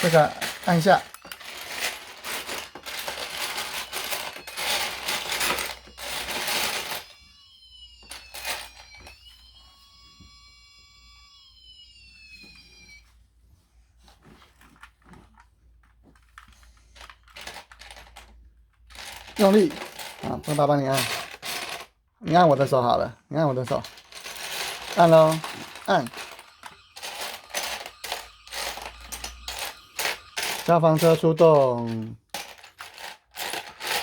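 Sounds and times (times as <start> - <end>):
electronic siren tones gliding: 2.3 - 13.0, 24.9 - 31.2.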